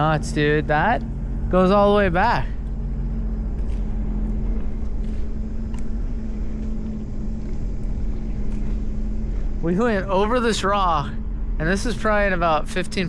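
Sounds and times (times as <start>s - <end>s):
watercraft engine running: 0.0s - 13.0s.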